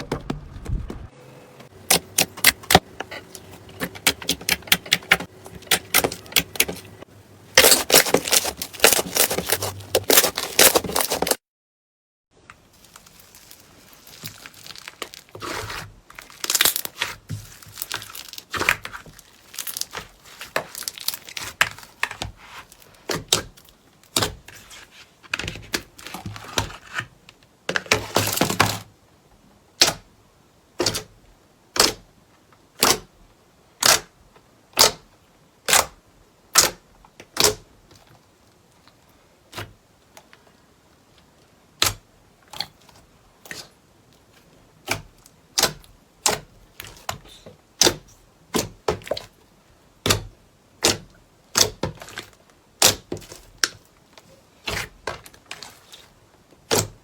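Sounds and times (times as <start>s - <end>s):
slime crackling and popping: 12.8s - 22.1s.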